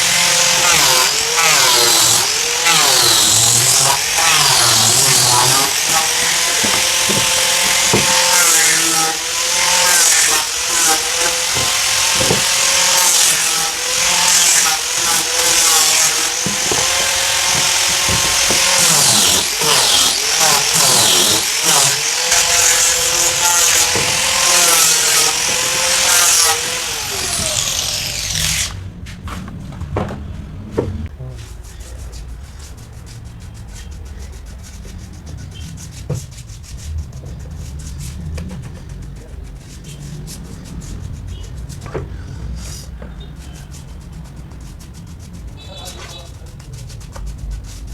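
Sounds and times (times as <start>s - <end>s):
power tool cutting wood: 0.0s - 28.8s.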